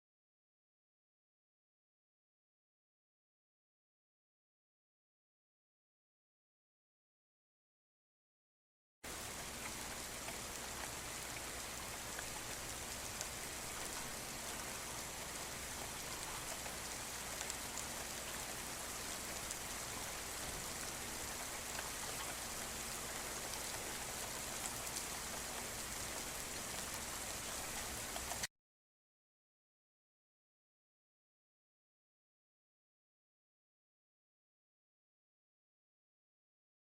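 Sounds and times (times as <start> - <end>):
raindrop ticks: 9.1 - 28.5
steady rainfall: 9.1 - 28.5.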